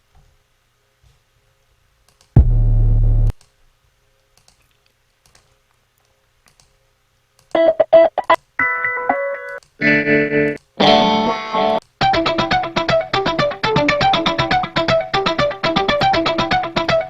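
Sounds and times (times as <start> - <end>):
faint mouse clicks: 2.0 - 2.4, 4.2 - 7.6
deep bass tone: 2.4 - 3.3
short pitched stabs and chord: 2.4 - 3.3.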